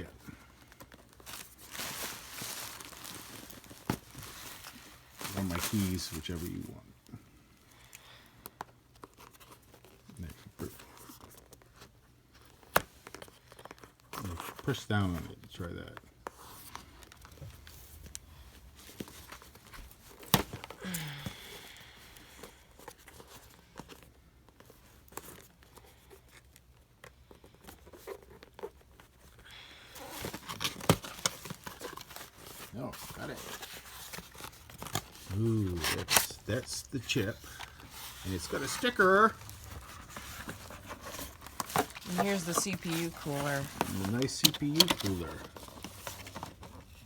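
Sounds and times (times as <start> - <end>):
cardboard box clicks and rustles: 0.1 - 6.7, 30.0 - 47.0.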